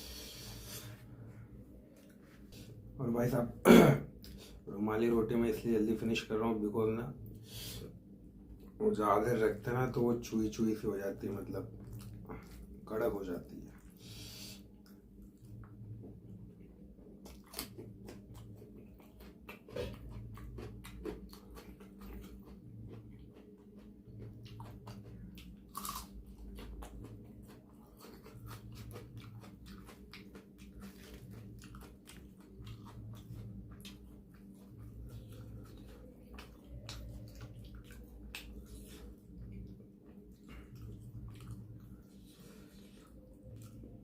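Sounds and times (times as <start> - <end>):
low hum: 0.0 - 44.0
person chewing with wet mouth clicks: 17.2 - 41.9.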